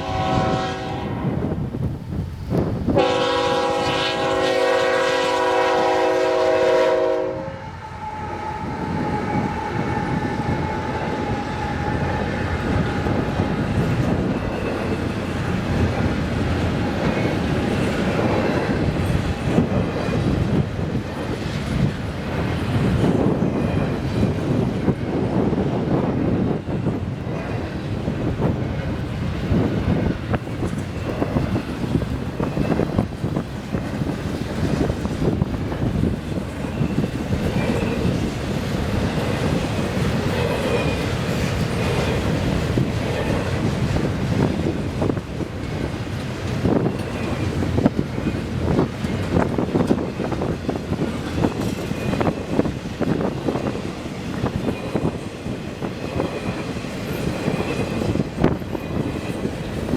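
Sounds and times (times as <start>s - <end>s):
wind buffeting microphone: 0.0s - 59.9s
train wheels clicking over rail joints: 8.9s - 59.9s.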